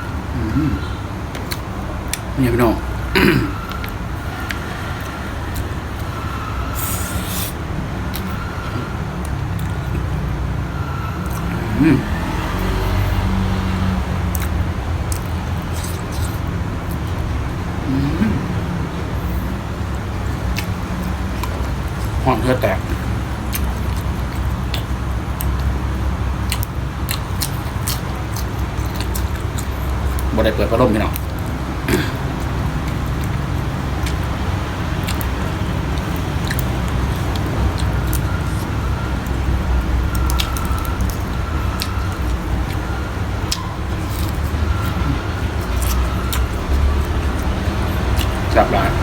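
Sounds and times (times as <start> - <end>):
chewing and lip-smacking: 0.0 - 2.4, 3.6 - 49.0
brief hiss: 6.8 - 7.6.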